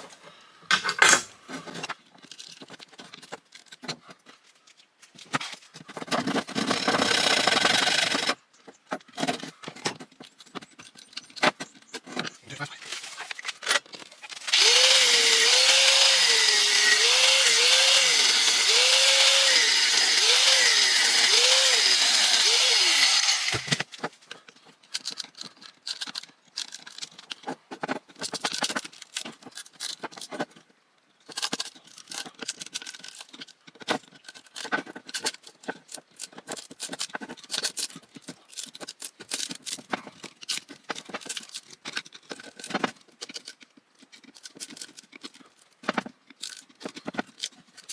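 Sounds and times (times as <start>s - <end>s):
handheld power tool cutting metal: 0.7s - 1.3s, 6.5s - 8.4s, 14.3s - 23.9s
metal parts clicking and tapping: 23.5s - 30.7s, 31.3s - 47.9s.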